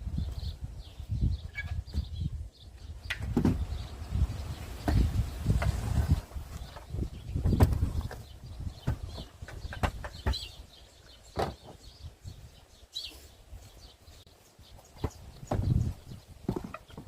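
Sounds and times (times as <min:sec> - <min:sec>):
birds chirping: 0:00.0 - 0:17.0
irregular knocks and scrapes: 0:04.8 - 0:08.2, 0:15.0 - 0:17.0.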